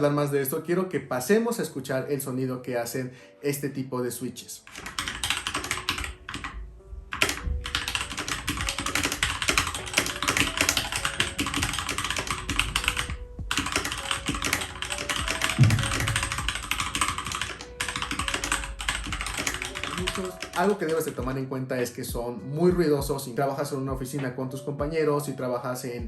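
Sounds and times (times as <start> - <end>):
fast typing on mechanical keyboard: 4.6 - 6.5, 7.1 - 21.2.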